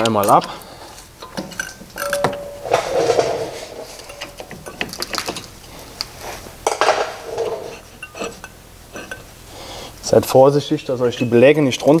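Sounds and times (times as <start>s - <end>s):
metal clinking and scraping: 0.0s - 9.4s.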